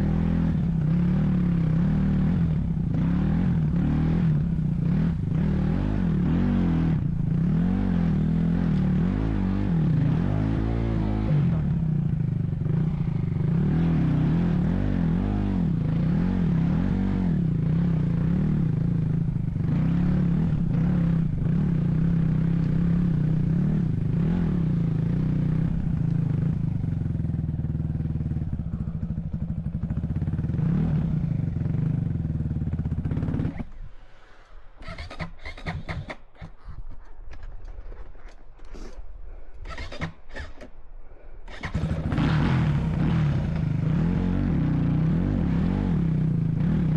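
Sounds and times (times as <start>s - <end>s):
vehicle engine running: 0.0s - 34.0s.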